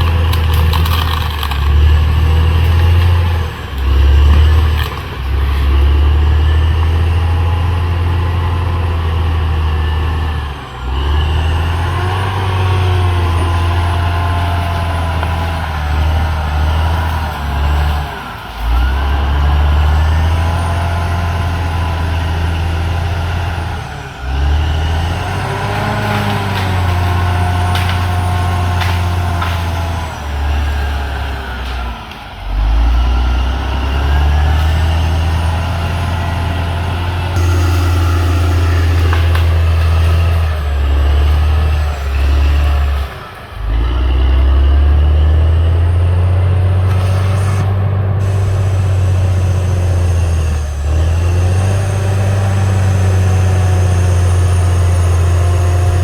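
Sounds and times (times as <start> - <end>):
bulldozer diesel engine running: 0.0 - 56.0
wavering high squealing: 33.9 - 41.6.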